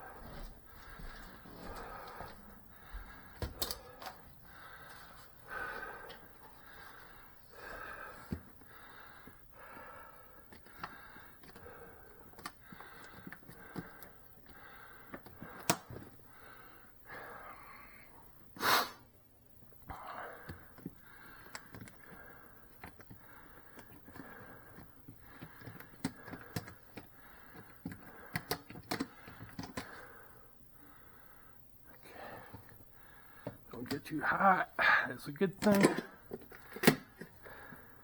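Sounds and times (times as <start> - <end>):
person breathing heavily: 0.0 - 19.0, 19.8 - 38.0
handling clicks and knocks: 35.5 - 37.4.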